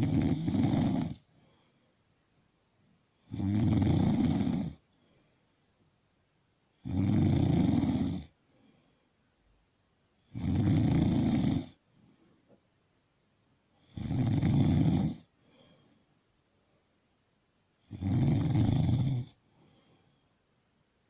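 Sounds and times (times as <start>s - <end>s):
loud snoring: 0.0s - 1.2s, 3.2s - 4.8s, 6.8s - 8.3s, 10.3s - 11.8s, 13.8s - 15.3s, 17.8s - 19.4s.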